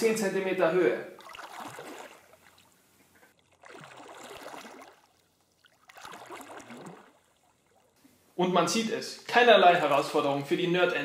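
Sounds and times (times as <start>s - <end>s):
pool water sloshing: 1.0s - 8.4s.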